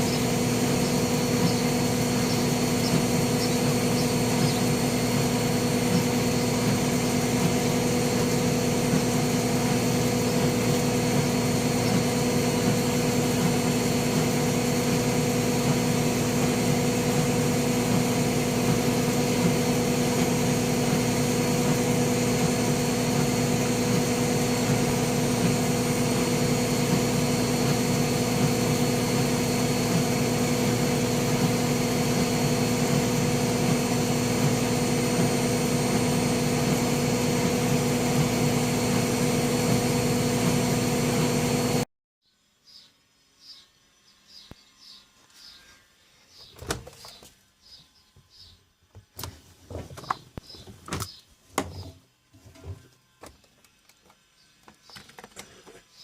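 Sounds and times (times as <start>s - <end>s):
washing machine spinning: 0.0s - 41.9s.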